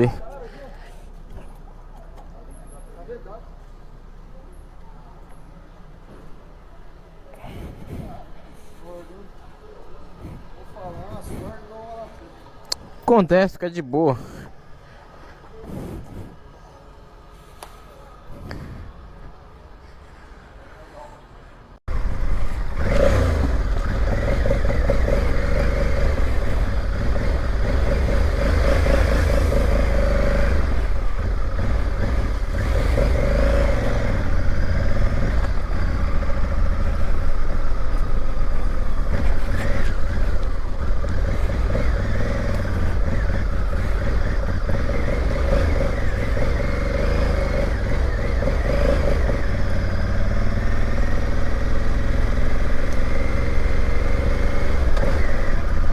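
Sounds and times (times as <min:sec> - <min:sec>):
motorcycle engine revving: 0:21.9 - 0:55.9.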